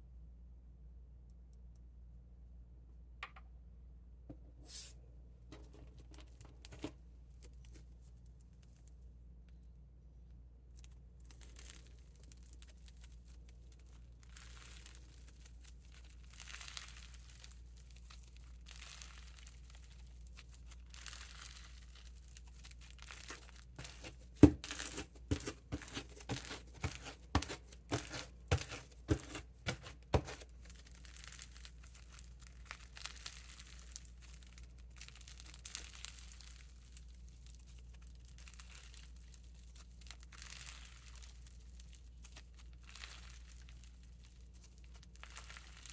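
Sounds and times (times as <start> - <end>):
slime crinkling and crunching: 10.7 - 45.9.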